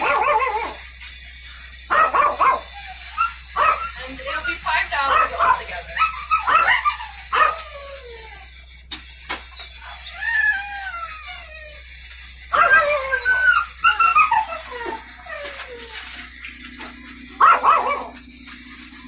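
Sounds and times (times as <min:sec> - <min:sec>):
dogs whining and howling: 0:00.0 - 0:19.0.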